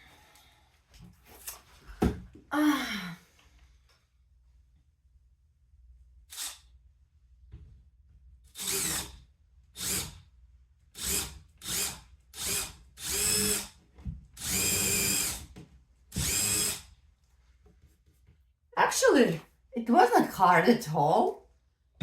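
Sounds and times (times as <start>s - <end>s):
power drill boring into wall: 8.5s - 9.2s, 9.8s - 10.2s, 11.0s - 13.8s, 14.4s - 16.9s.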